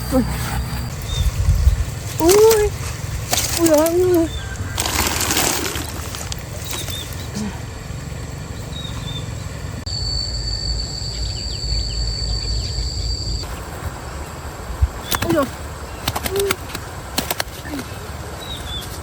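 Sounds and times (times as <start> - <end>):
bird chirps: 0.0 - 5.1, 5.7 - 17.0
steady high-pitched tone: 7.8 - 14.9.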